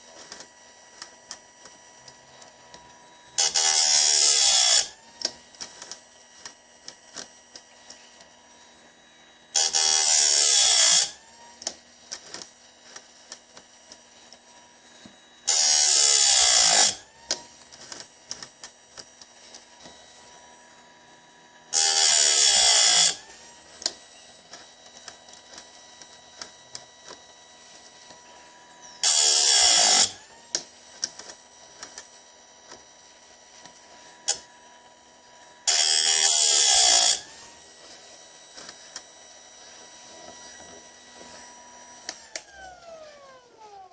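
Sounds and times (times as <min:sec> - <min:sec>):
chain sharpener grinding wheel: 0:00.0 - 0:43.9.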